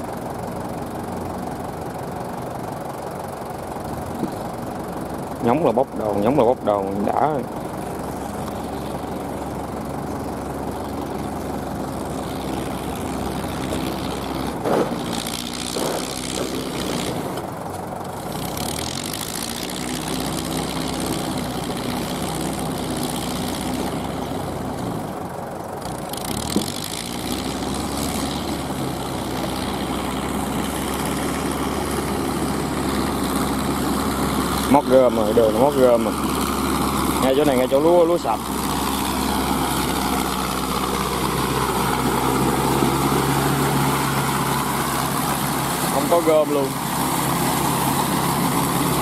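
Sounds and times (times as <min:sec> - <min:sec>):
tractor diesel engine running: 0:00.0 - 0:49.0
brief knocks: 0:14.6 - 0:15.1.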